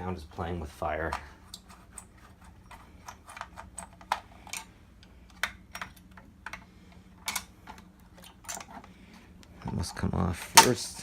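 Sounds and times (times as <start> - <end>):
faint steady hum: 0.0 - 11.0
clicks and taps of parts handled: 3.0 - 9.8.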